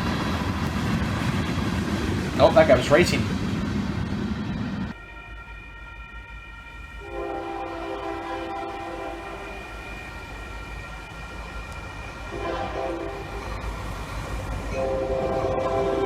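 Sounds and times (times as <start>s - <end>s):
low train rumble: 0.0s - 16.0s
locomotive air horn blasts: 4.9s - 11.2s, 12.0s - 13.6s, 14.7s - 16.0s.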